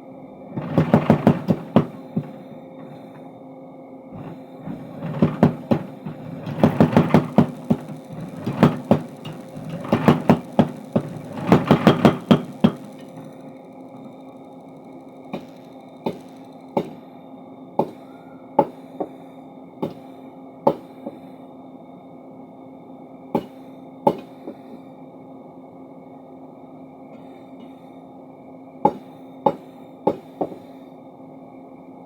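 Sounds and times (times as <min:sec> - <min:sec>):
machine motor hum: 0:00.3 - 0:18.1
power hammer blows on steel: 0:04.2 - 0:13.3.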